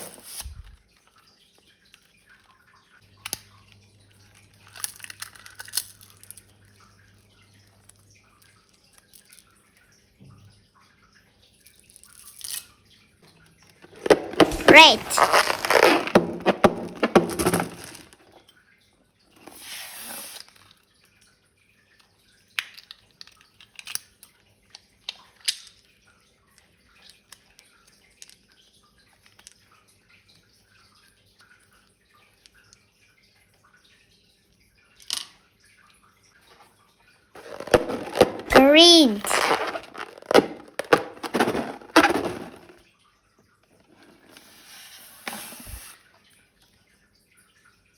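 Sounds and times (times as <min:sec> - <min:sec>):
slime squelching: 0:13.9 - 0:18.3.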